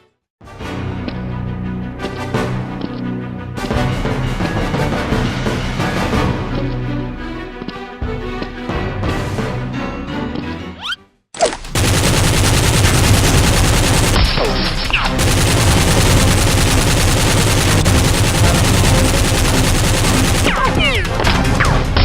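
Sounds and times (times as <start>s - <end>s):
rapid automatic gunfire: 11.6s - 21.6s.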